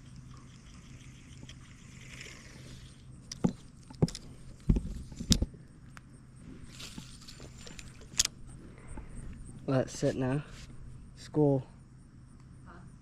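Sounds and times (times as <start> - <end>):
faint steady low hum: 0.0 - 13.0
sharp clicks and knocks: 3.2 - 6.0.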